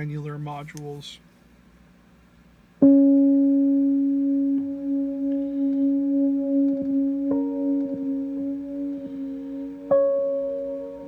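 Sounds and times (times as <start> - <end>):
synth drone note: 2.8 - 11.0.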